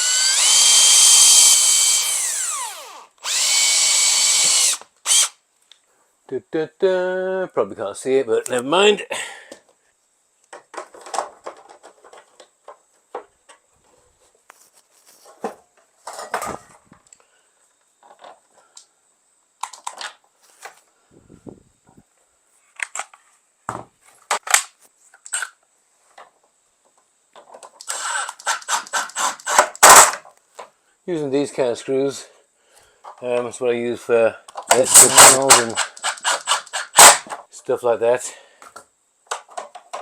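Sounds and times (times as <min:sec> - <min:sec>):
hand tools and metal parts clicking: 0:27.4 - 0:30.2, 0:34.5 - 0:37.4.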